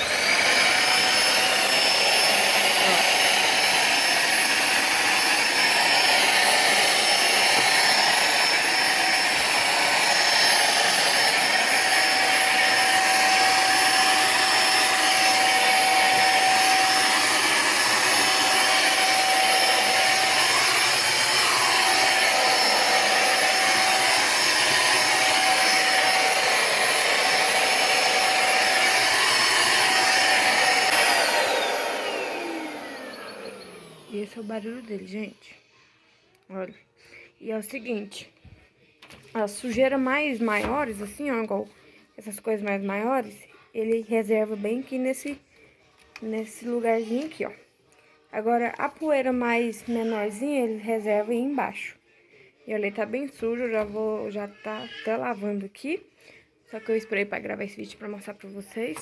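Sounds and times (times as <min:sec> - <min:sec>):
motor winding down: 0:00.0 - 0:34.4
vacuum cleaner running: 0:00.0 - 0:35.4, 0:39.7 - 0:41.2.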